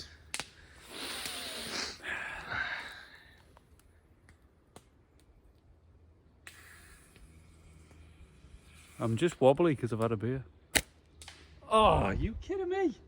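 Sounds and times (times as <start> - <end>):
faint clicks: 0.0 - 1.5
person exhaling breathily: 0.8 - 3.4.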